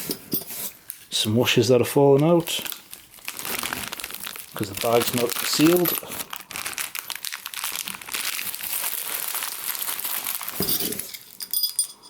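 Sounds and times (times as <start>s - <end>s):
plastic bag crinkling: 2.2s - 11.6s.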